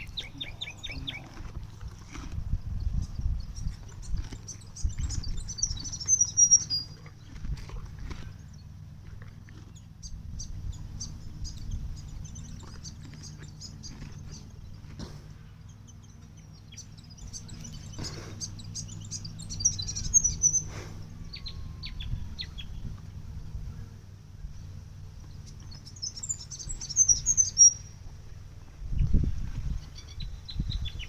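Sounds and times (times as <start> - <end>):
small birds chirping: 0.0 - 31.0
steady low hum: 0.0 - 31.0.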